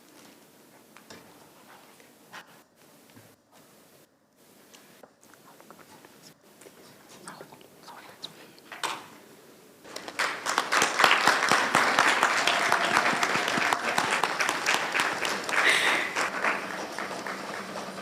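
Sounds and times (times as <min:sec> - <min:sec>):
crowd applauding: 0:09.9 - 0:18.0.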